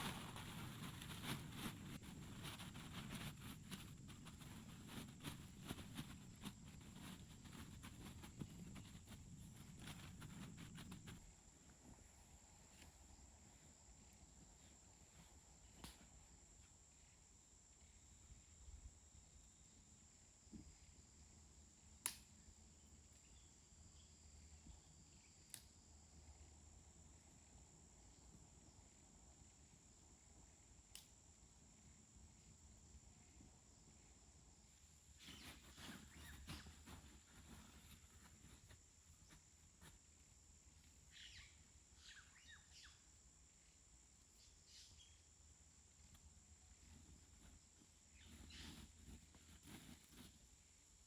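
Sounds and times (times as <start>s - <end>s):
light rustling and crackling: 0.0s - 17.2s, 34.8s - 43.0s, 45.8s - 51.0s.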